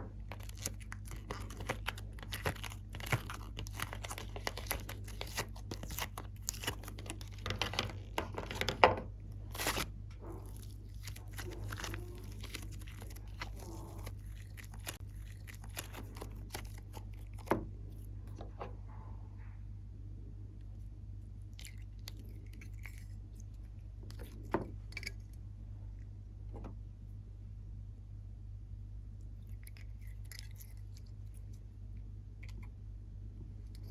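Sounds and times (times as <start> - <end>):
steady low hum: 0.0 - 33.9
slime crackling and popping: 0.1 - 17.5.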